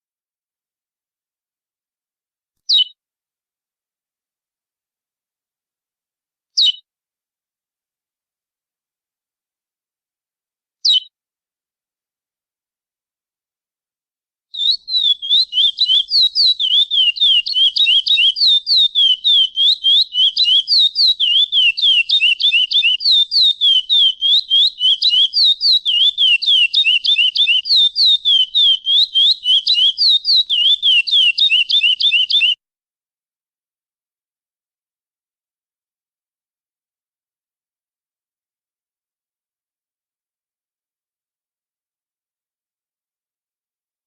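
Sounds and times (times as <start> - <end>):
bird whistling down-slurred notes: 14.6 - 32.6.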